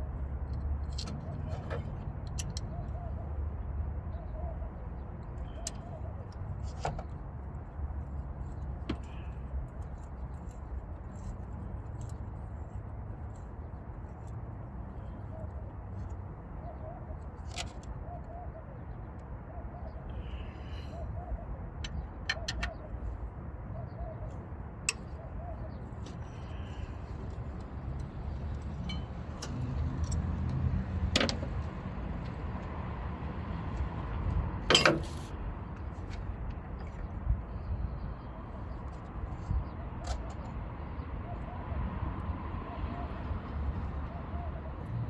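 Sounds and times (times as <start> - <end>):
dove cooing: 2.6 - 3.4, 4.1 - 6.2, 18.0 - 22.9, 42.6 - 45.0.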